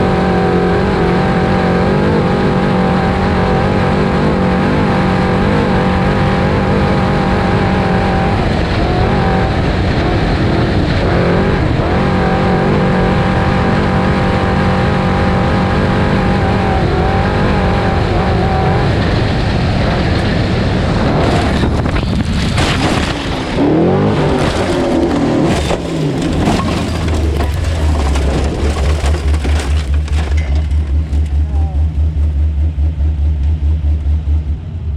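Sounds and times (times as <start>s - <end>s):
truck engine running hard: 0.0s - 34.9s
sharp knocks and rattles: 24.2s - 31.5s.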